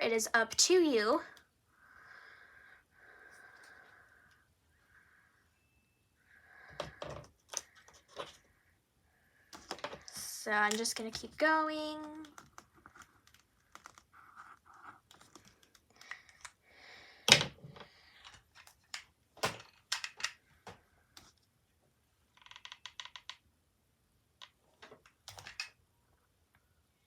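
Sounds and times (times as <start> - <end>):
wooden tiles clicking: 9.6 - 16.6, 17.3 - 20.4, 22.4 - 23.4, 24.4 - 25.8.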